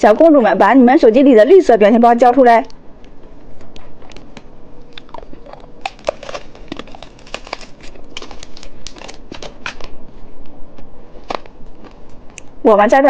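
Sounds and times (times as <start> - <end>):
plastic wrapper crinkling: 4.1 - 10.0.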